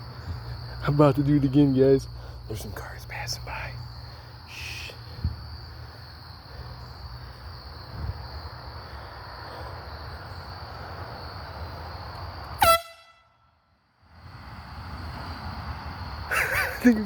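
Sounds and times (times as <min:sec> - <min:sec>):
insect chirring: 0:00.0 - 0:12.7
air horn blast: 0:12.6 - 0:13.4.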